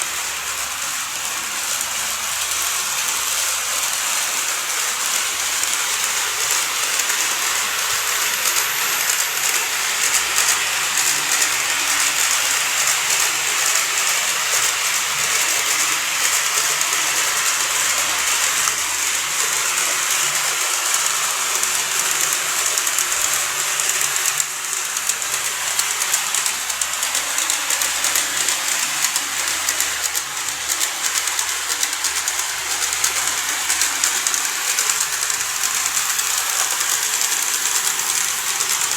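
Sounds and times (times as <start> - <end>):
model train wheels hissing on rail: 0.0 - 38.9
rapid fine clicking: 15.2 - 38.9.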